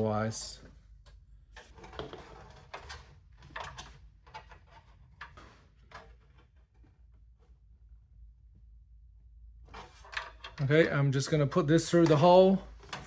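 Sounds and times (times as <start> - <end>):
cable clicks and plastic rustles: 11.8 - 13.0.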